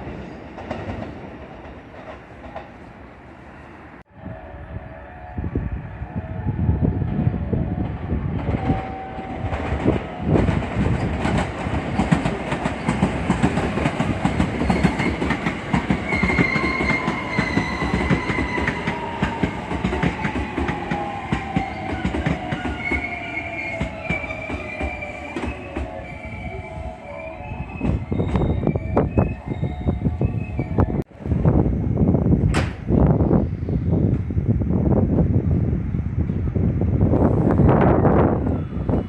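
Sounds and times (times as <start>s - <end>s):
train wheels clattering: 8.4s - 26.0s
train wheels squealing: 14.6s - 31.0s, 38.0s - 39.0s.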